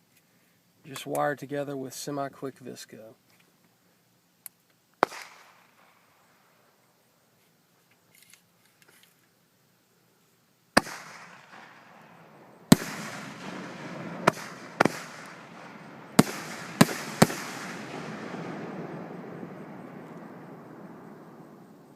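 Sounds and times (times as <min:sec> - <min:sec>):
distant firework bangs: 0:05.0 - 0:06.0, 0:10.8 - 0:21.9.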